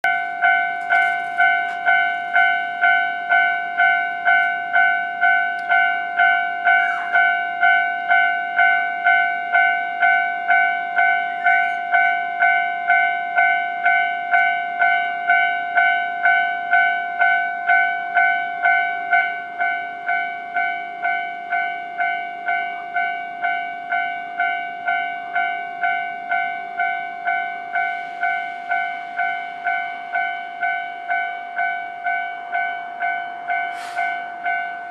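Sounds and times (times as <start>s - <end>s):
level crossing bell ringing: 0.0s - 34.9s
train hiss: 33.6s - 34.4s.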